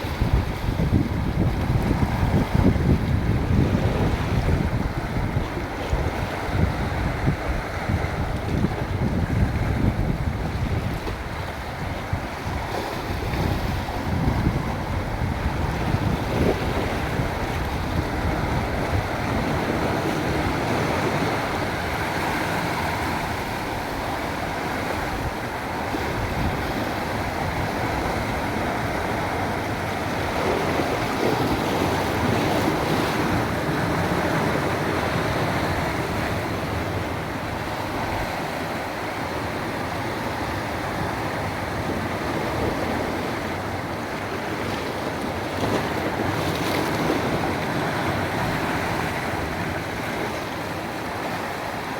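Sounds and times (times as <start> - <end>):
sea waves washing: 0.0 - 51.9
wind buffeting microphone: 0.0 - 51.9.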